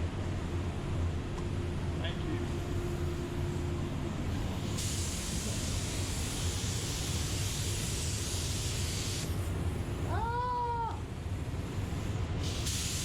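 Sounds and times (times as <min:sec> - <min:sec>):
steady low hum: 0:00.0 - 0:12.4
aerosol spray hissing: 0:04.5 - 0:09.5, 0:11.7 - 0:13.0.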